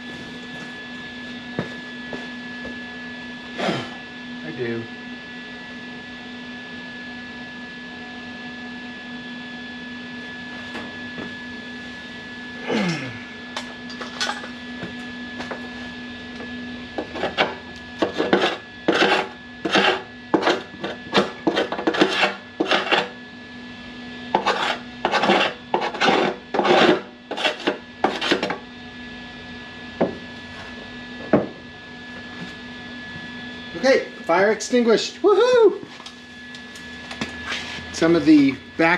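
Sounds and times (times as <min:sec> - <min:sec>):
steady low hum: 0:00.0 - 0:05.8, 0:09.6 - 0:38.9
rubbing and scraping strokes: 0:17.0 - 0:23.1, 0:24.4 - 0:28.6.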